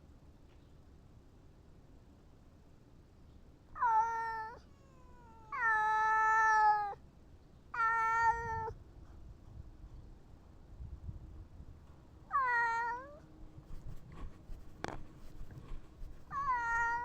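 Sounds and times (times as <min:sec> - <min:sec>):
cat meowing: 0:03.8 - 0:07.0, 0:07.8 - 0:08.8, 0:12.3 - 0:13.3, 0:16.3 - 0:17.0.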